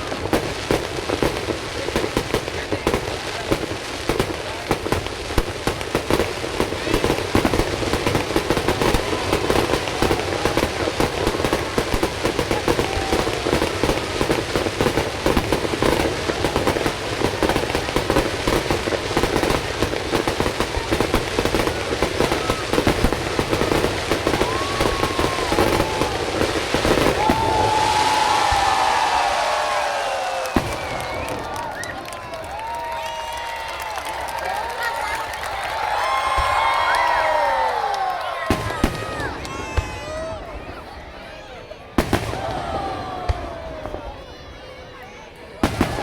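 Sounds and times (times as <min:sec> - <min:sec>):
fireworks bangs and crackling: 0:00.0 - 0:46.0.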